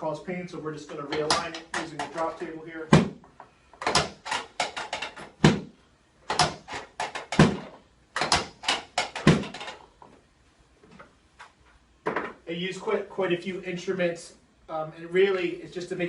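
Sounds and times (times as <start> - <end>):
drop table clicks and thud: 2.9 - 5.7, 6.3 - 9.8, 12.0 - 12.4.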